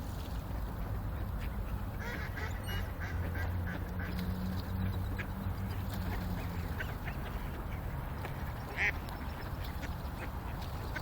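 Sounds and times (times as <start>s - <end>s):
ducks quacking: 1.4s - 4.1s.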